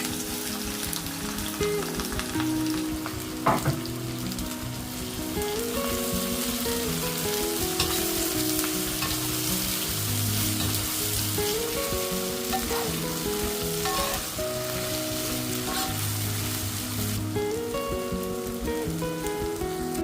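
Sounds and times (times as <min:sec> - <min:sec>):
food sizzling in a frying pan: 0:00.0 - 0:20.0
soft background music: 0:00.0 - 0:20.0.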